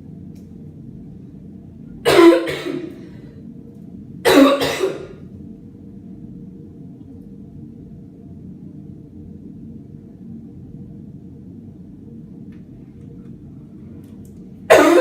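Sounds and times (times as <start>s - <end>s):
person coughing hard: 2.1s - 3.0s, 4.2s - 5.2s, 14.7s - 15.0s.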